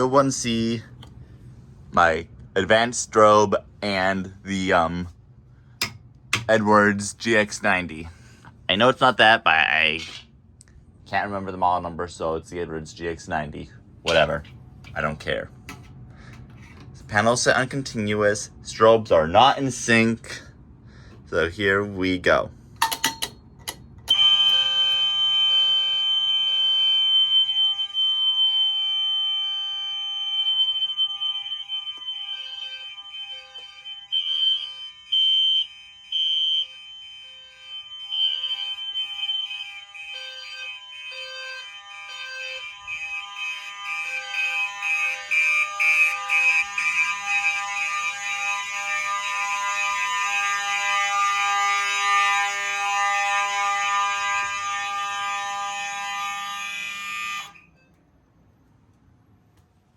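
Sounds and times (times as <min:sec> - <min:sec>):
low-frequency alarm sounder: 0:24.1 - 0:57.7
fire alarm horns: 0:24.1 - 0:57.9.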